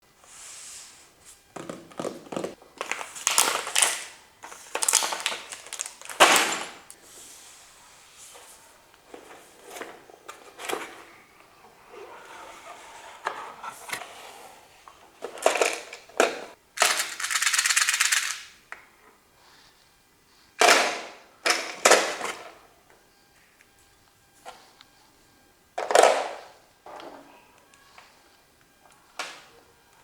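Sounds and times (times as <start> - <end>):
plastic parts clicking and rattling: 4.7 - 6.9, 15.2 - 18.5.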